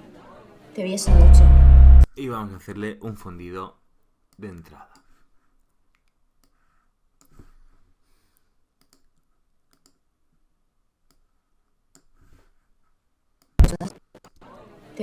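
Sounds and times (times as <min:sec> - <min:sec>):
faint computer mouse clicks: 0:05.9 - 0:06.6, 0:08.8 - 0:10.0, 0:11.9 - 0:12.2.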